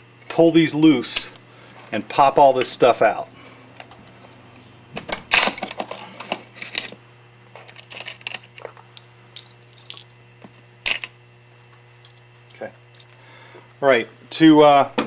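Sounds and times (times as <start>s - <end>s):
small metal parts clinking: 5.2s - 10.2s, 10.8s - 11.2s, 12.0s - 13.2s.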